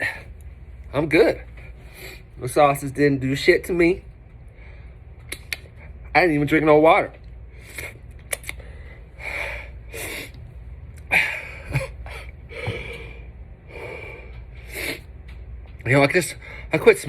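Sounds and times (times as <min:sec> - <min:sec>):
man breathing heavily: 0:00.0 - 0:00.4, 0:08.6 - 0:15.3, 0:16.4 - 0:16.8.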